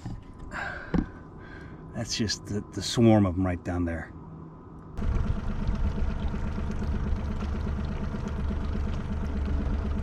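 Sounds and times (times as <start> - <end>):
outboard motor running: 5.0 - 10.0.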